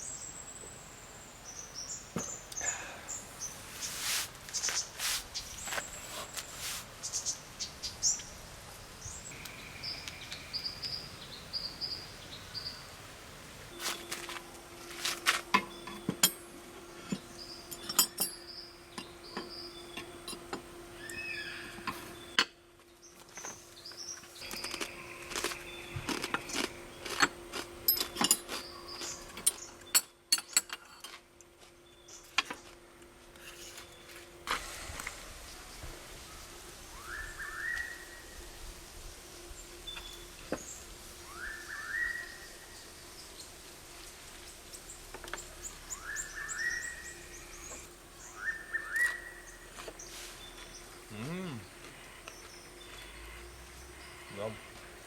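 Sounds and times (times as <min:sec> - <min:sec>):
birds chirping: 0:00.0 - 0:13.0, 0:15.5 - 0:27.2, 0:27.9 - 0:30.6, 0:39.5 - 0:55.0
steady low hum: 0:00.0 - 0:55.0.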